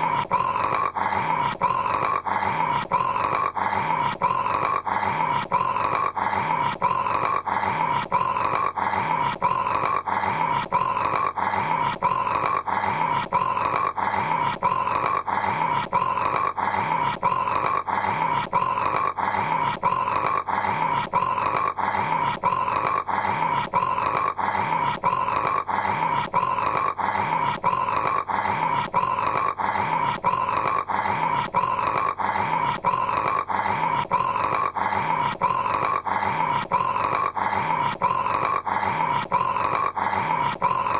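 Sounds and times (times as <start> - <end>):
man snoring: 0.0 - 40.9.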